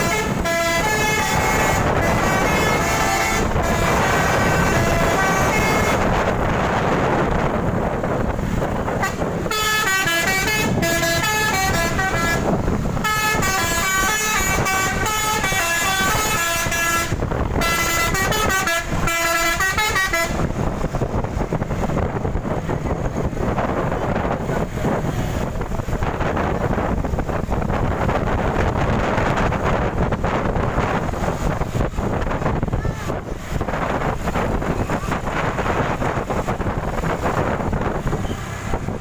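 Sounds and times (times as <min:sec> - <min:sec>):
musical bus horn tune: 0:00.0 - 0:06.6, 0:08.9 - 0:21.0
steady rushing noise: 0:00.0 - 0:39.0.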